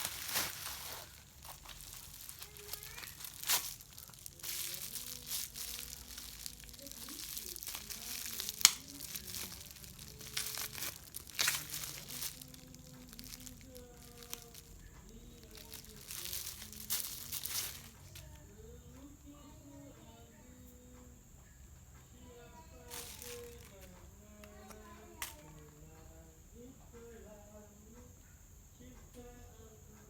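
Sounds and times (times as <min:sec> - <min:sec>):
packaging snap: 0:00.0 - 0:14.7, 0:15.4 - 0:18.3, 0:22.9 - 0:25.6
packaging crinkling and tearing: 0:00.0 - 0:18.3, 0:22.9 - 0:25.6.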